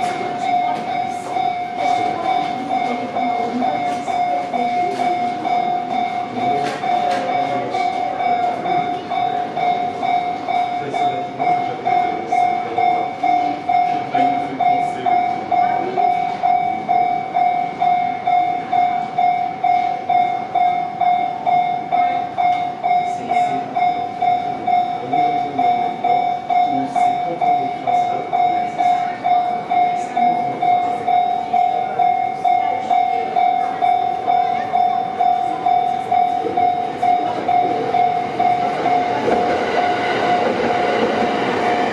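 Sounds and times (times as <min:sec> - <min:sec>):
level crossing bell ringing: 0:00.0 - 0:41.9
train rumbling past: 0:22.0 - 0:41.9.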